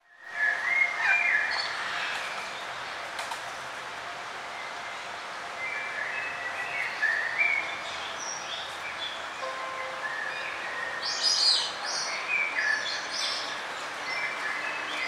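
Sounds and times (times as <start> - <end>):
steady outdoor hiss: 0.0 - 15.0.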